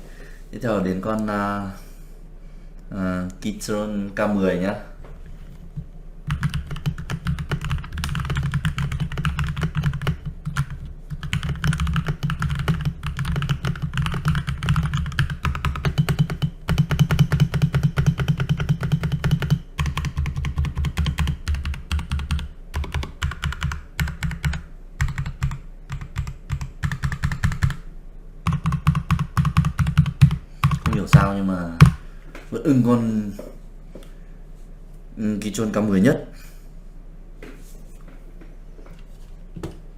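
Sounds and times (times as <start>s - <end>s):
mechanical keyboard typing: 6.3s - 27.8s, 28.5s - 32.0s.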